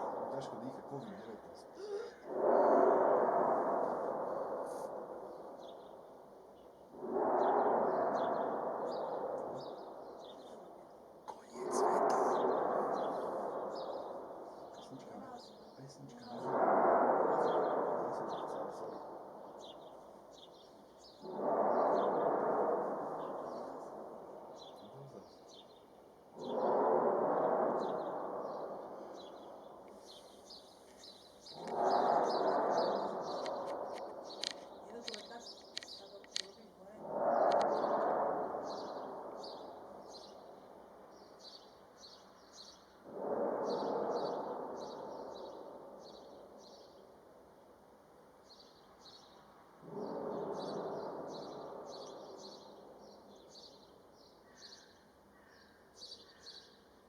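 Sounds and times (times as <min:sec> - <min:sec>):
small birds chirping: 0:00.0 - 0:57.0
loud sound in the sky: 0:26.4 - 0:30.2, 0:31.2 - 0:36.4, 0:37.1 - 0:41.6.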